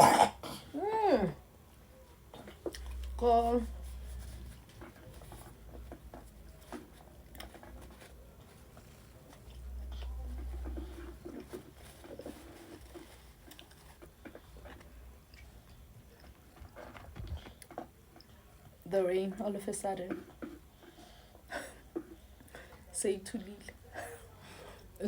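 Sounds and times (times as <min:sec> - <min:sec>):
close chewing mouth sounds: 0:08.8 - 0:18.8.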